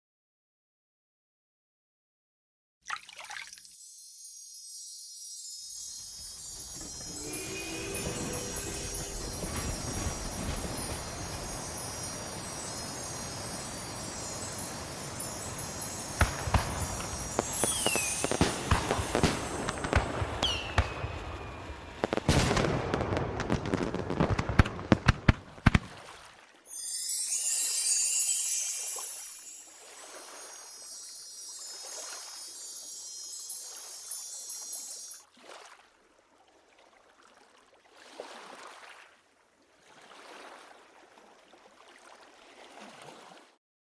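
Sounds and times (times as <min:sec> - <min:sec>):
falling firework whistles: 0:03.6 - 0:25.0, 0:26.7 - 0:35.2
faint rushing noise: 0:05.8 - 0:22.3
fireworks bangs: 0:06.2 - 0:26.0
crackling firework bangs: 0:06.5 - 0:26.0.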